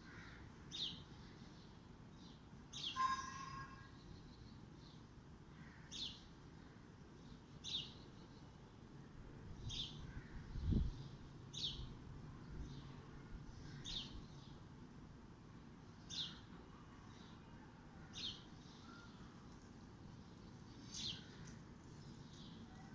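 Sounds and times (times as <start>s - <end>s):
bird short high call: 2.8s - 4.0s.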